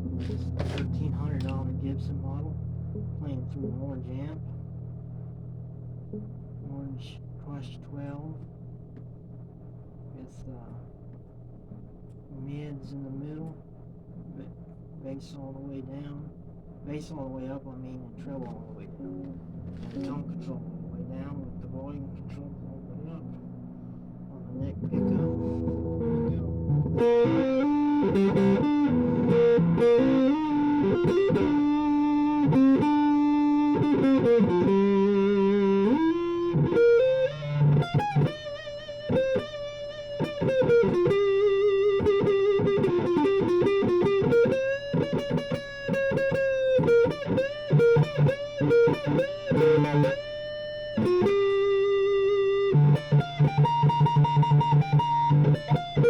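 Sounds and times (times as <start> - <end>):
electric guitar melody: 0.0 - 7.0, 18.4 - 56.0.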